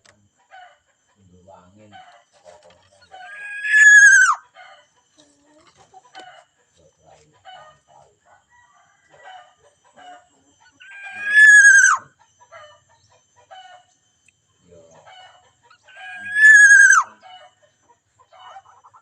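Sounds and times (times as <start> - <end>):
small birds chirping: 1.1 - 8.3, 9.4 - 19.0
rooster crowing: 3.1 - 4.8, 8.4 - 10.2, 10.8 - 12.7, 15.1 - 17.6.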